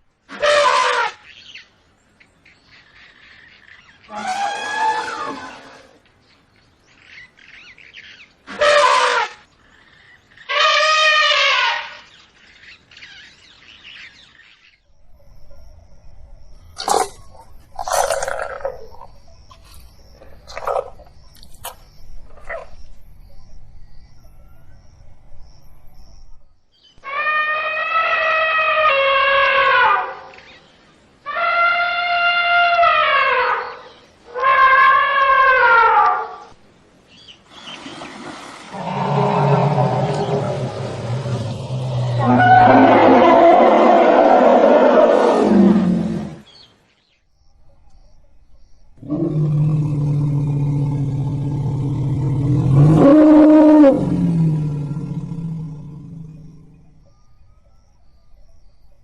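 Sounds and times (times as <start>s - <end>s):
elephant trumpeting: 0.3s - 1.2s, 4.1s - 6.0s, 8.5s - 9.4s, 10.5s - 12.0s, 27.0s - 30.3s, 31.3s - 36.5s, 38.7s - 46.4s
faint bird chirps: 18.6s - 27.0s, 55.6s - 59.0s.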